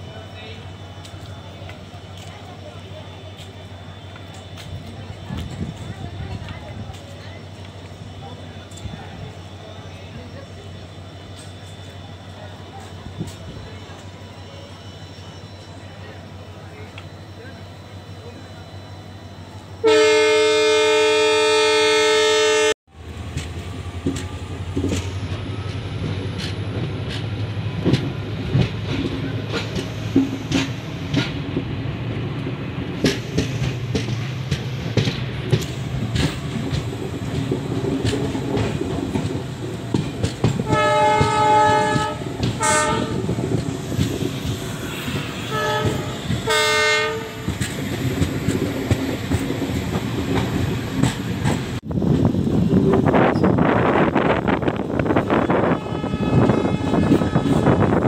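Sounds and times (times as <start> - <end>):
train rumbling: 0.0 - 58.0
train horn: 19.8 - 22.8, 40.6 - 43.3, 44.8 - 47.4, 55.3 - 58.0.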